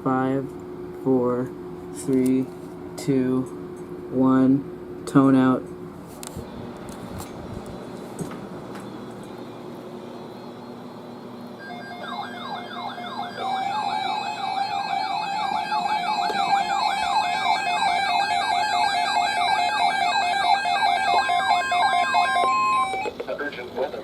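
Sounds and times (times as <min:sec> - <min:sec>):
weather radio alert alarm: 0:11.6 - 0:23.2.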